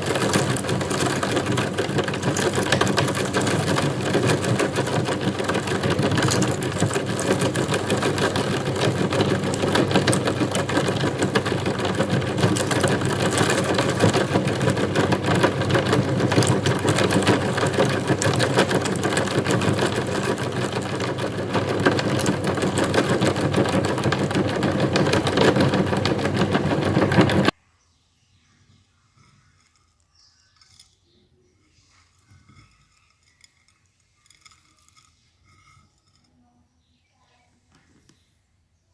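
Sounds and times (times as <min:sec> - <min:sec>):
electric meat grinder running: 0:00.0 - 0:27.5.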